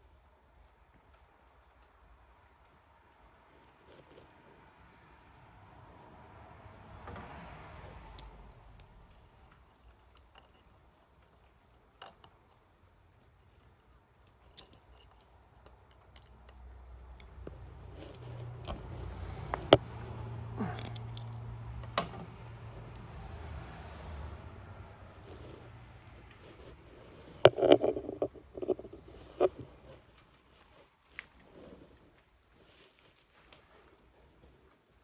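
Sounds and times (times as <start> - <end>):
light clicks of small parts: 7.0 - 31.5.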